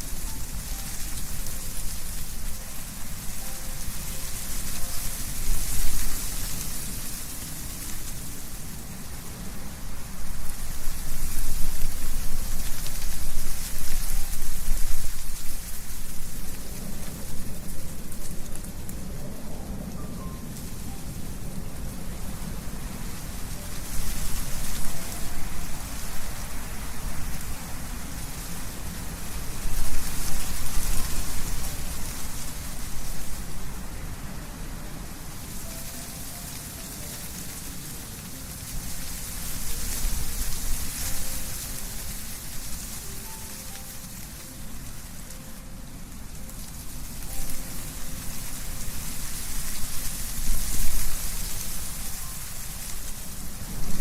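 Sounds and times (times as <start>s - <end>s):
leaves rustling: 0.0s - 54.0s
wind blowing through trees: 0.0s - 54.0s.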